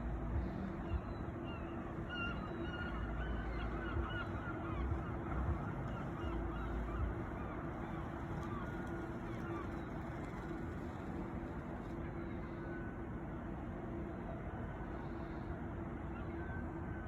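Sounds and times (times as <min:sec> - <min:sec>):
low hum and rumble: 0:00.0 - 0:17.0
seagulls calling: 0:00.4 - 0:12.9.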